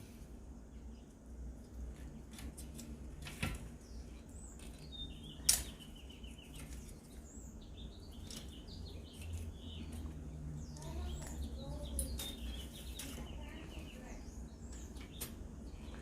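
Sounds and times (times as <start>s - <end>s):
faint bird chirps: 3.8s - 16.0s.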